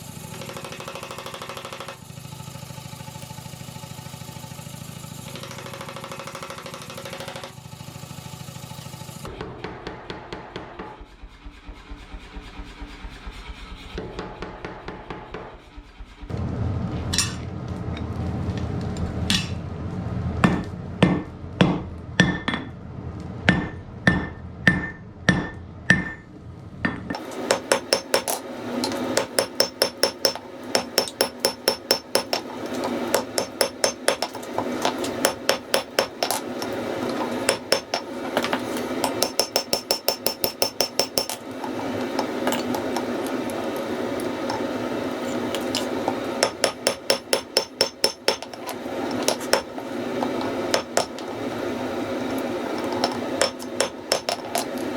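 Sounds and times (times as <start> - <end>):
steady rushing noise: 10.5 - 27.3
hammer striking iron on anvil: 13.8 - 16.3, 19.3 - 19.6, 20.4 - 22.7, 23.5 - 41.4, 45.5 - 51.3, 52.8 - 54.7.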